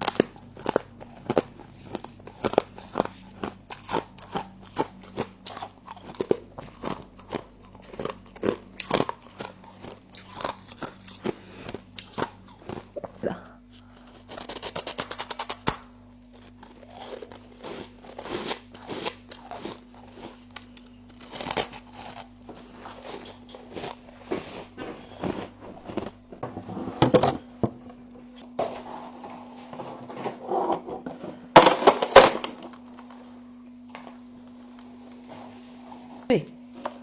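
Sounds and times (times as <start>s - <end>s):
frost crunching: 0.0s - 26.8s.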